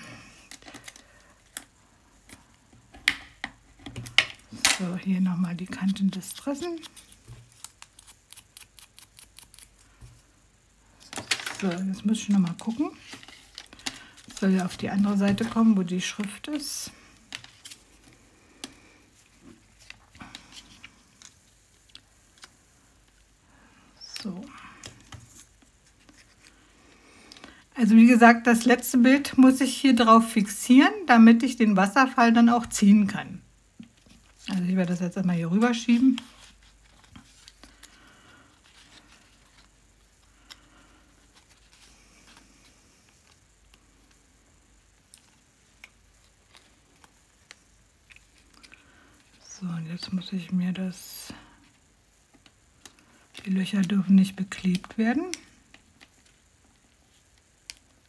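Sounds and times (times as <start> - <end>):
paper rustling: 5.5 - 10.3, 10.9 - 16.7, 17.3 - 22.5, 33.9 - 40.6.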